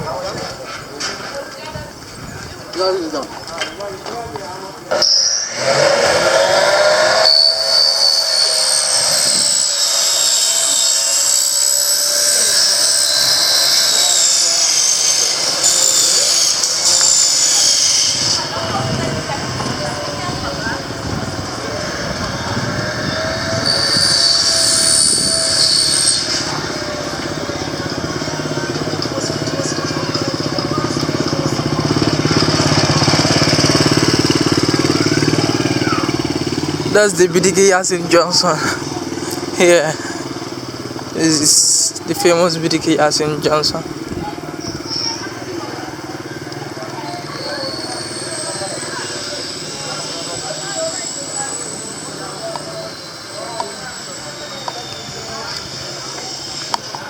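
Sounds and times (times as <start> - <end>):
engine throbbing: 4.8 - 57.0
machine hissing and whining: 4.9 - 43.9, 46.6 - 57.0.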